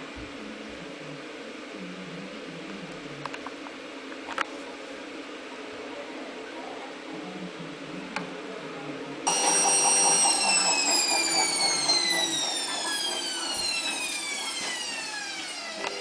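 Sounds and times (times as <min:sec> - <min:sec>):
electric motor whine winding down: 0:09.3 - 0:16.0.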